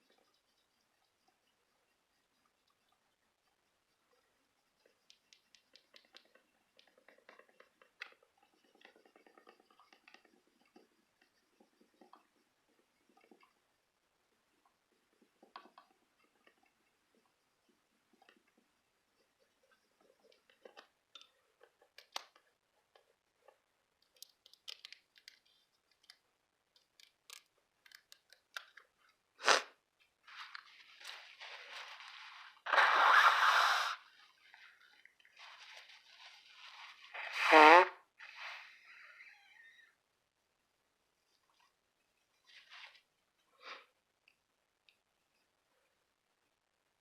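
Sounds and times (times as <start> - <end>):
paper crinkling and rustling: 30.3 - 32.7, 35.4 - 37.2.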